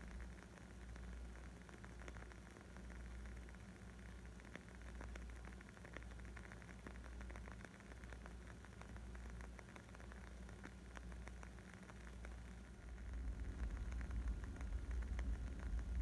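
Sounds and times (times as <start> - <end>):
wood fire crackling: 0.0 - 16.0
low rumble: 12.8 - 16.0.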